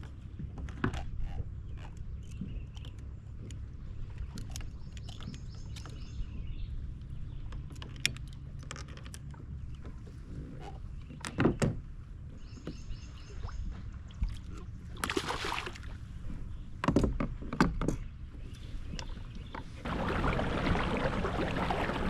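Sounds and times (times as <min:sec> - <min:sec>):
steady low rumble: 0:18.2 - 0:22.0.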